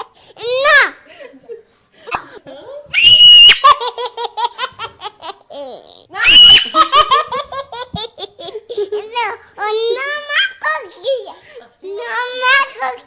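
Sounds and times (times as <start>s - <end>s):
baby laughing and squealing: 3.0s - 8.0s.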